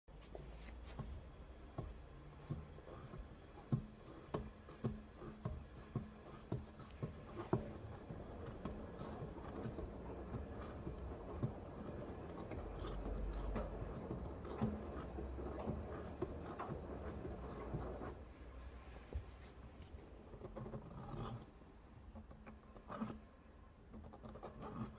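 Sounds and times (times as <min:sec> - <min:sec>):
low tyre hum: 0:00.1 - 0:21.5
tyre and road noise: 0:00.2 - 0:19.9.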